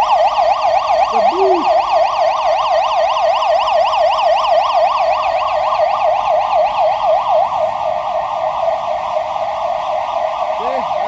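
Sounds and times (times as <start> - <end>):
alarm siren warbling: 0.0 - 7.4, 10.1 - 11.0.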